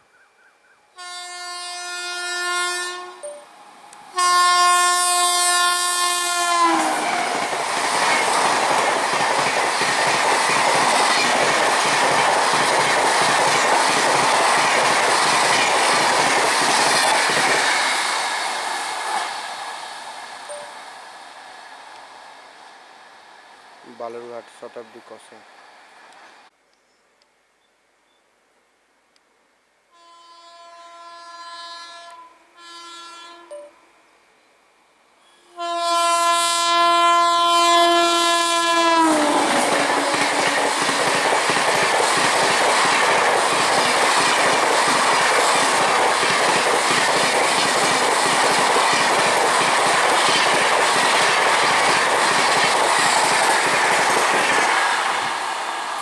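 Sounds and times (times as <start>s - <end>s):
train horn: 0.9s - 3.3s, 4.1s - 7.3s, 29.9s - 33.9s, 35.3s - 40.8s
train coaches rushing past: 6.2s - 26.5s, 38.1s - 56.0s.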